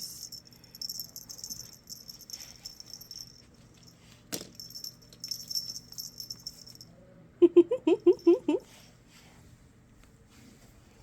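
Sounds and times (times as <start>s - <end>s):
faint metallic jingling: 0.0s - 6.9s.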